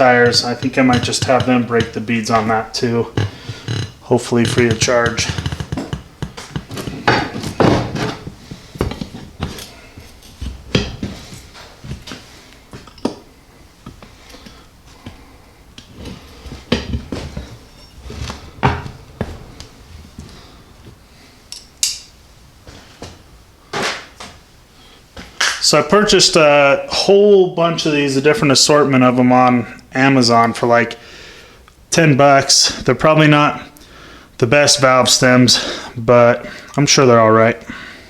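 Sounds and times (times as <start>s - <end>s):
metal tools clinking: 12.8s - 13.3s.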